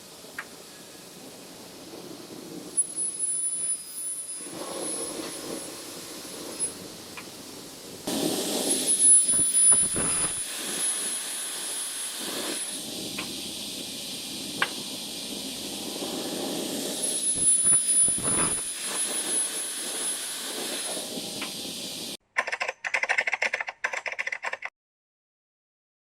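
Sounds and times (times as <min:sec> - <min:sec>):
metal cutting saw running: 0:08.5 - 0:13.1, 0:16.3 - 0:21.2.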